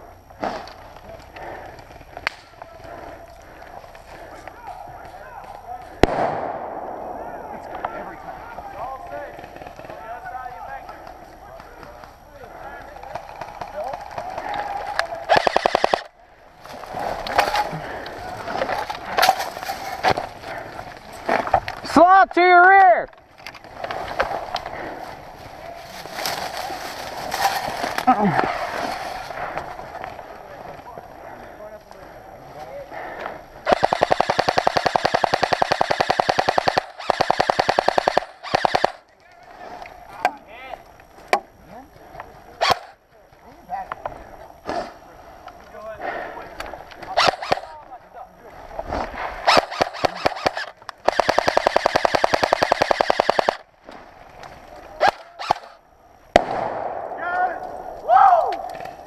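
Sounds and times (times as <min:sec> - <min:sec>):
airsoft gun full-auto burst: 0:13.1 - 0:16.1, 0:33.6 - 0:39.0, 0:42.6 - 0:43.0, 0:47.2 - 0:47.7, 0:49.4 - 0:53.7, 0:55.0 - 0:55.8.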